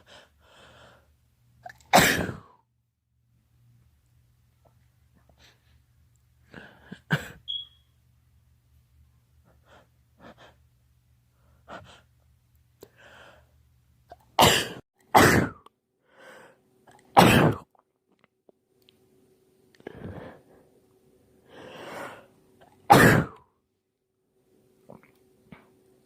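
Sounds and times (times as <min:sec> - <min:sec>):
man sneezing: 0:01.9 - 0:02.5, 0:14.4 - 0:15.6, 0:17.2 - 0:17.6, 0:22.9 - 0:23.4.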